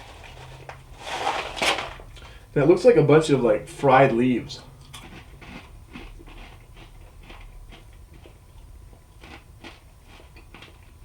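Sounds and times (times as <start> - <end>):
crunching and chewing chips: 4.5 - 11.0.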